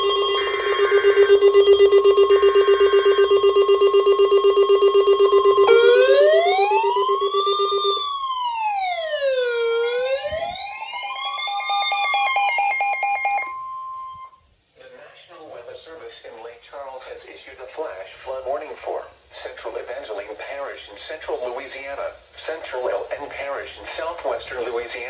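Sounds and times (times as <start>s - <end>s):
data noise bursts: 0.0s - 8.0s
rapid beeping alarm: 0.0s - 14.4s
steady high tone: 0.0s - 14.4s
wailing siren: 0.0s - 14.4s.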